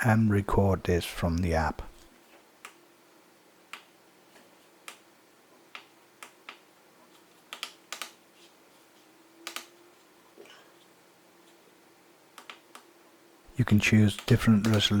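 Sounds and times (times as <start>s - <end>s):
push buttons clicking: 13.8s - 15.0s.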